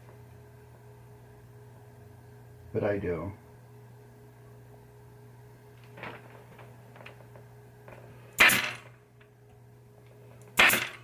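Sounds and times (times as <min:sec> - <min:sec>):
steady low hum: 0:00.0 - 0:11.0
staple gun firing: 0:10.6 - 0:11.0.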